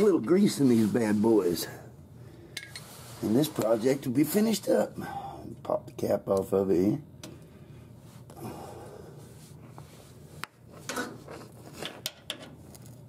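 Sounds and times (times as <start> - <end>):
faint rubbing: 0.4 - 1.8, 2.8 - 4.1.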